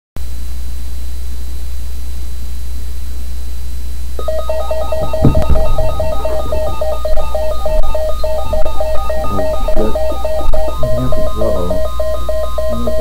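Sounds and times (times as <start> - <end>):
low electrical hum: 0.2 - 13.0
short electronic tones: 4.2 - 13.0
thump: 5.0 - 6.0.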